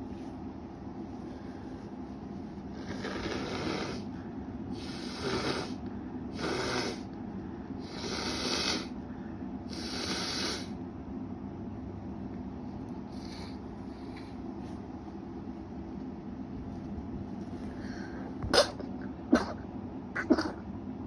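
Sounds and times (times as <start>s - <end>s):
steady low hum: 0.0s - 21.0s
person stifling sneezes: 18.4s - 19.6s.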